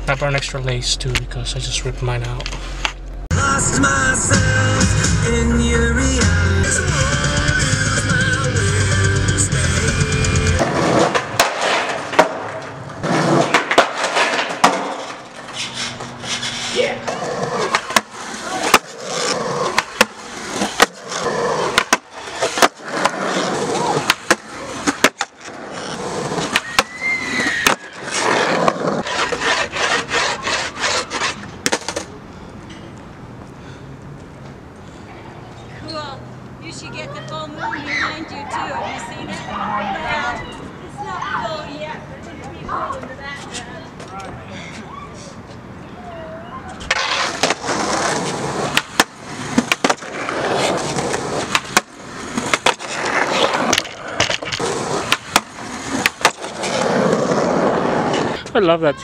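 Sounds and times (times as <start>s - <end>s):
skateboard wheels rolling on concrete: 0.0s - 59.0s
skateboard clacking on ground: 10.5s - 33.0s, 46.6s - 58.6s
brief squeal: 26.6s - 28.1s.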